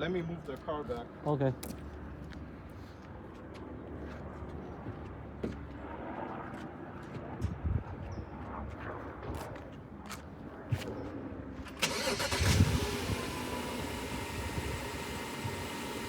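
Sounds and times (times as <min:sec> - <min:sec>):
car engine cranking and idling: 0:11.6 - 0:16.0.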